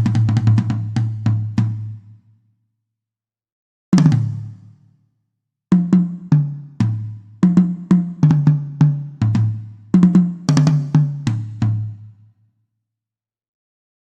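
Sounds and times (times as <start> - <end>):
drum tom fills: 0.0 - 2.1, 4.0 - 4.7, 5.7 - 12.1.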